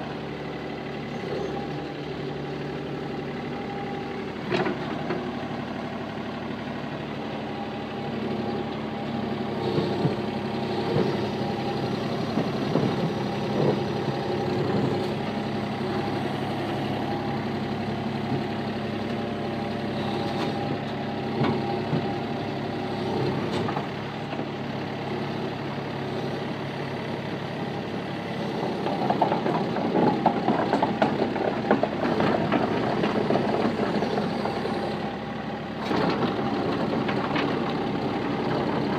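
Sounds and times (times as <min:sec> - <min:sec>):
engine running steadily: 0:00.0 - 0:38.9
clanks and knocks: 0:12.4 - 0:15.1, 0:28.7 - 0:34.8.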